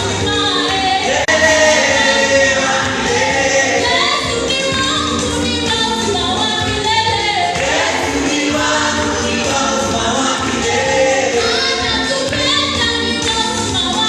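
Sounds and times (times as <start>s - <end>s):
instrumental backing: 0.0s - 14.0s
choir singing: 1.0s - 4.4s, 7.4s - 12.1s.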